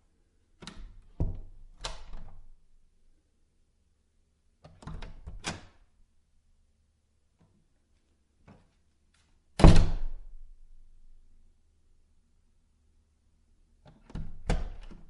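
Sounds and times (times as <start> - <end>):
wooden door slamming: 9.6 - 10.2.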